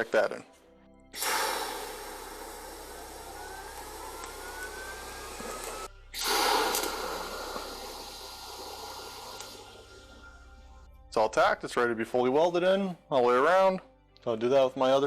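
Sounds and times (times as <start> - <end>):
welding arc burning: 1.2 - 10.4.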